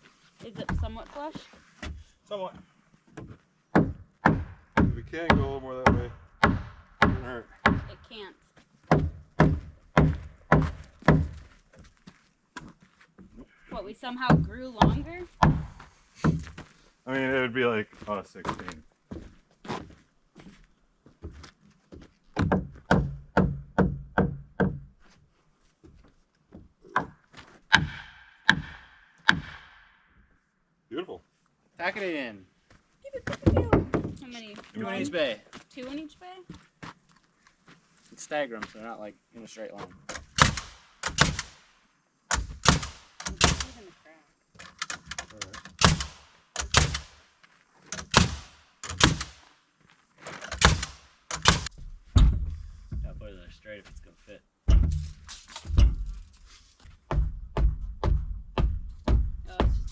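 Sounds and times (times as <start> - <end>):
heavy blows on timber wall: 3.2 - 8.0, 8.9 - 11.4, 14.2 - 16.6, 22.4 - 25.0, 26.9 - 29.8, 50.6 - 53.2, 54.6 - 56.2, 57.0 - 59.9
hammer striking nails into wood: 3.8 - 7.9, 8.9 - 11.4, 14.3 - 16.5, 22.4 - 24.9, 27.0 - 29.9, 40.1 - 41.6, 42.3 - 43.8, 44.8 - 47.2, 47.9 - 49.4, 50.5 - 52.4.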